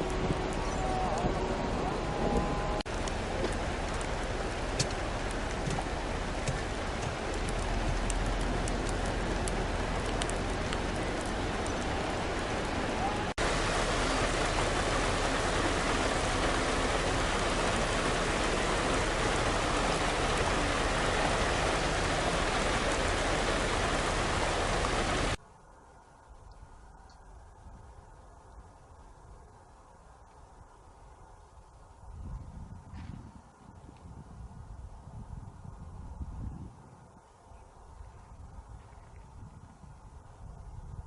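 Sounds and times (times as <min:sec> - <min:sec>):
heavy rain hissing: 0:00.0 - 0:25.4.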